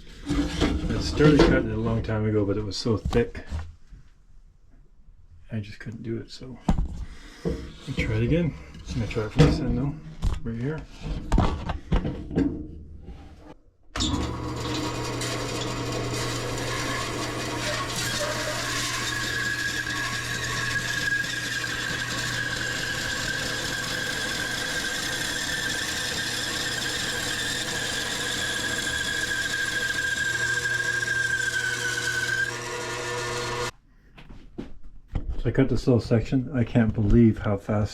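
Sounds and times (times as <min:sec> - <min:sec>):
bandsaw humming: 0:14.0 - 0:33.7
high whine of saw cutting wood: 0:14.0 - 0:33.7.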